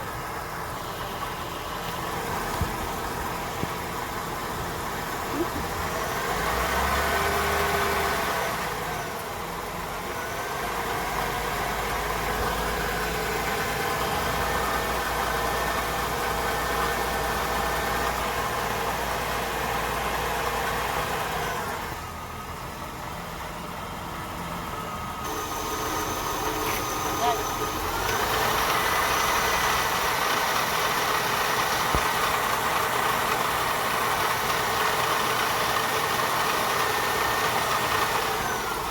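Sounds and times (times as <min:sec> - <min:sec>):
car engine revving: 0:04.4 - 0:09.2, 0:25.2 - 0:38.9.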